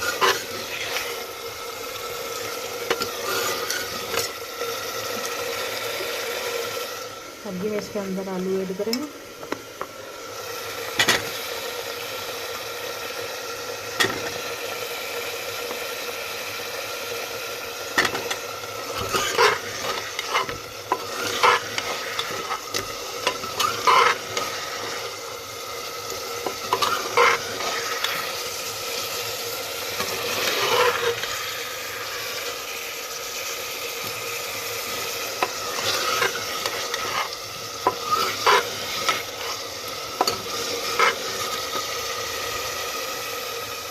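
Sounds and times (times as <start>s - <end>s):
spoon scraping and knocking pan: 0.0s - 1.2s, 11.0s - 11.3s, 17.9s - 25.3s, 26.1s - 28.4s, 30.0s - 31.4s, 34.9s - 41.9s
food sizzling in oil: 0.0s - 43.9s.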